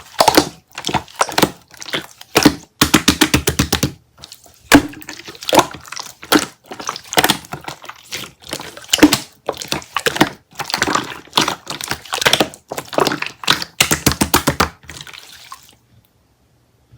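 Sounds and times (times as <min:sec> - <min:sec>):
slime squished by hand popping: 0:00.1 - 0:04.0.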